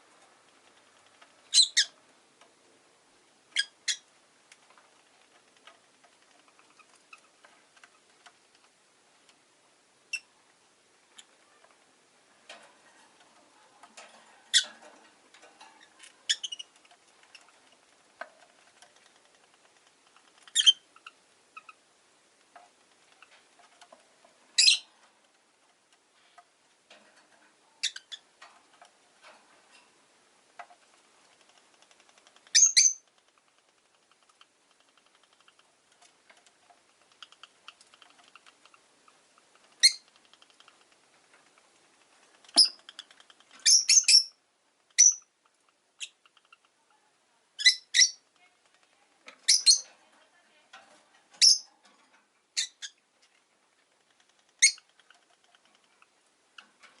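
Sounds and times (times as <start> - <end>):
lovebirds chirping: 1.4 - 2.0, 3.5 - 4.1, 15.7 - 17.6, 20.4 - 21.8, 24.5 - 24.9, 27.8 - 28.3, 32.4 - 33.1, 39.8 - 40.2, 42.5 - 46.8, 47.6 - 48.2, 49.4 - 50.0, 51.3 - 51.7, 52.5 - 53.0, 54.5 - 57.0.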